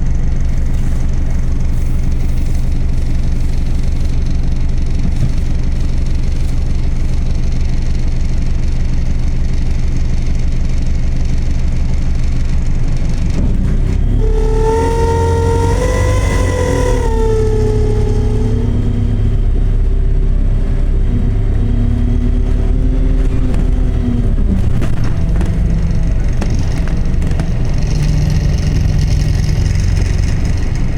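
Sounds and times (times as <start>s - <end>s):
bus drivetrain rumbling: 0.0s - 30.9s
pitched whine: 13.0s - 30.9s.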